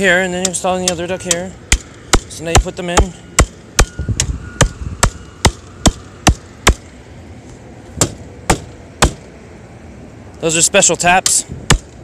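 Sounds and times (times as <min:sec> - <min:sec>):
sharp hammer strikes: 0:00.4 - 0:06.9, 0:08.0 - 0:09.3, 0:11.2 - 0:12.0.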